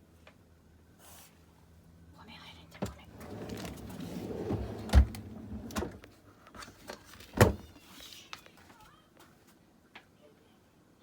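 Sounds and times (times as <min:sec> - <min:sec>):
drawer knocking shut: 0:03.1 - 0:06.0
refrigerator drawer sliding: 0:03.1 - 0:06.0.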